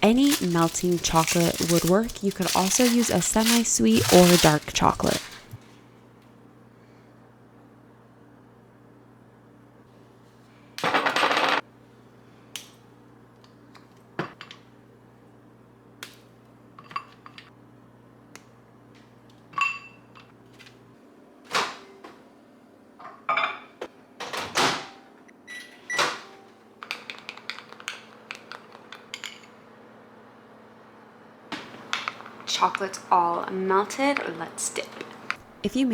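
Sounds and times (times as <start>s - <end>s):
utensils clinking on dishes: 0.0s - 5.6s, 26.9s - 29.6s.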